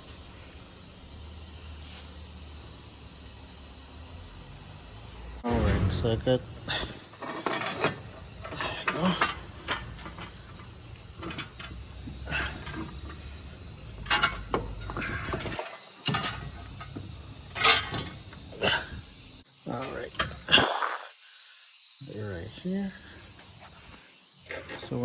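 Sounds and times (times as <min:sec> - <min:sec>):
sharp knocks: 0:05.5 - 0:07.0.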